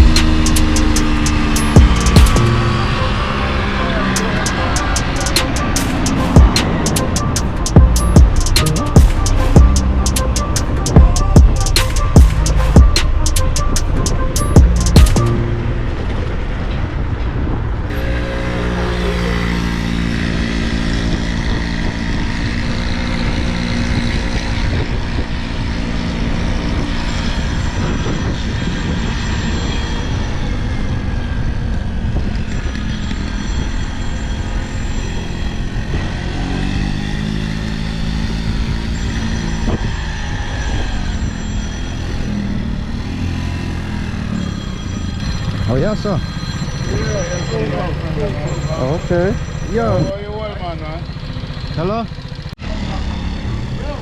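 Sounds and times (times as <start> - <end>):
road noise: 0.0 - 54.0
vehicle engine running: 0.0 - 54.0.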